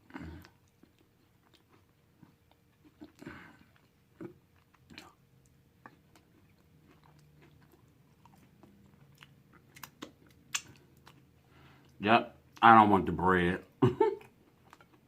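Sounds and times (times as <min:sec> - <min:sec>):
person chewing: 0:00.0 - 0:12.0, 0:14.2 - 0:15.0
soft mouth smacks: 0:09.6 - 0:11.2.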